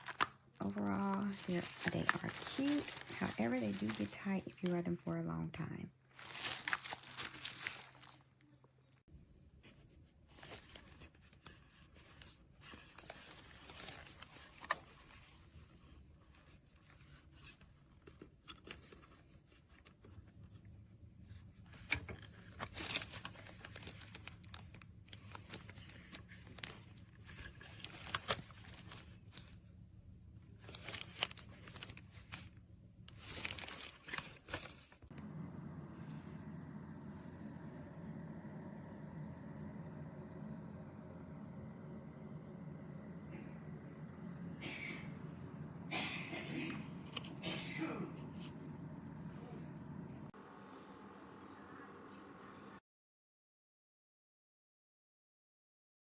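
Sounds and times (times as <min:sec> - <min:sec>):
rustling and crinkling handling: 0:00.0 - 0:35.7, 0:41.4 - 0:50.3
faint low hum: 0:18.7 - 0:52.8.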